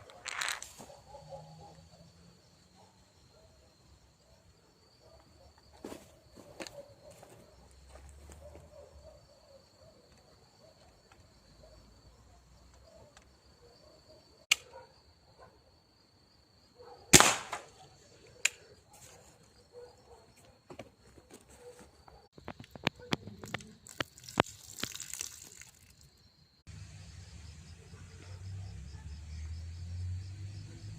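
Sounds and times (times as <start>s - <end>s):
air rifle shot: 17.1s - 17.8s.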